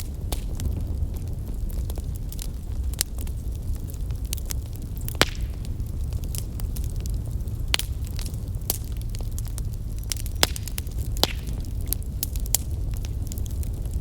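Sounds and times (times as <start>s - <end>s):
bonfire crackling and popping: 0.0s - 14.0s
low fire rumble: 0.0s - 14.0s.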